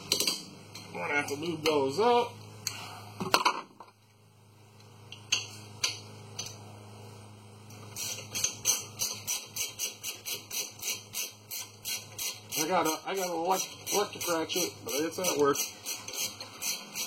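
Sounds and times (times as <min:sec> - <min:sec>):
hand ratchet clicking: 0:08.0 - 0:17.0.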